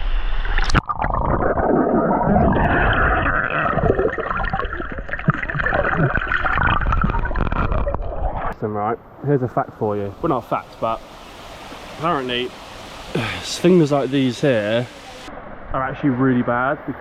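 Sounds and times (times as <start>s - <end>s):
small underwater crackles: 0.5s - 8.6s
muffled underwater bubbling: 0.6s - 8.6s.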